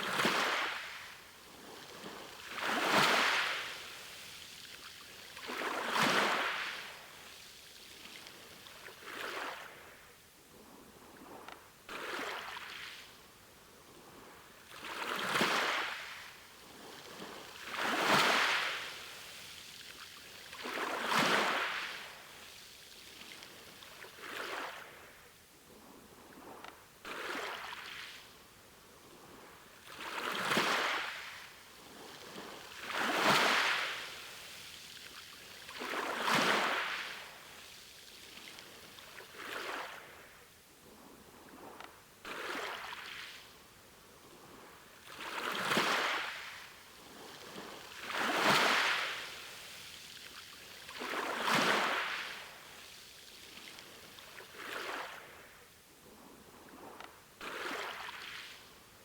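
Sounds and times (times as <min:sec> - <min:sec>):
sea waves breaking on shore: 0:00.0 - 0:59.0.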